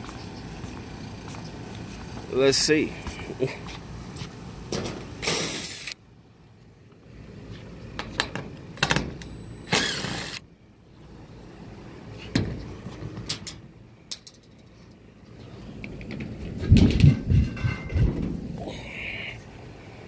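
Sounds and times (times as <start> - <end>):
tools clicking and knocking: 13.3 - 14.7.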